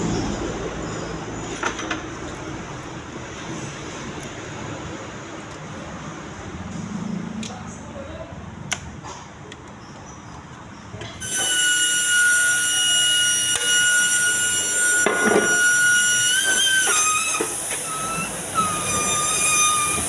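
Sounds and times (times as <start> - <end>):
compressed-air tool whistling: 11.2 - 20.0.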